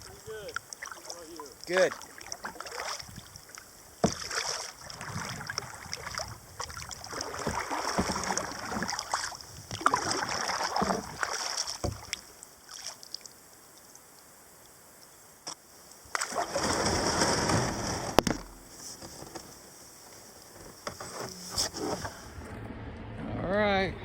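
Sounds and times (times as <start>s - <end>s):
paddle knocking: 0.0s - 12.2s, 16.1s - 22.3s
paddle splashing in water: 0.0s - 13.3s, 16.1s - 22.4s.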